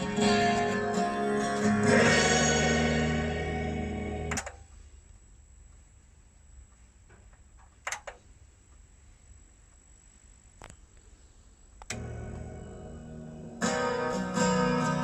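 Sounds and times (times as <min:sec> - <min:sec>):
music: 0:00.0 - 0:04.4, 0:12.0 - 0:15.0
faint hum and hiss: 0:00.0 - 0:15.0.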